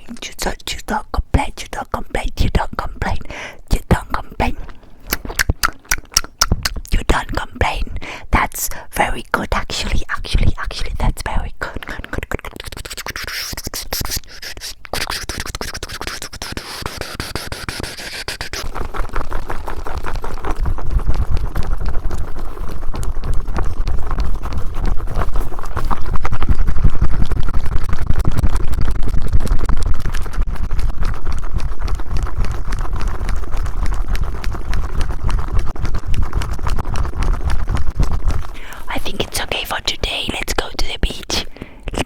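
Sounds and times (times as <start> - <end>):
sharp clicks: 5.1 - 7.0
tapping on microphones: 5.1 - 7.9.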